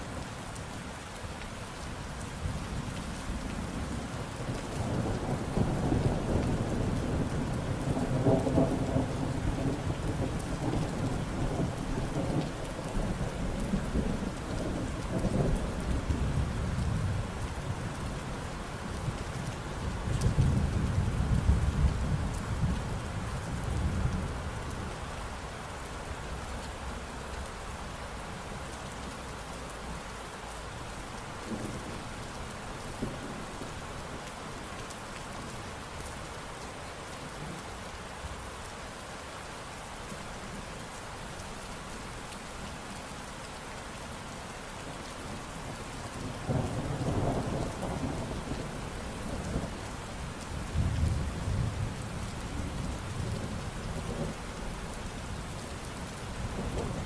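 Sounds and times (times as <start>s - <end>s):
steady rain falling: 0.0s - 57.0s
thunder rumbling: 4.8s - 17.8s, 46.2s - 54.8s.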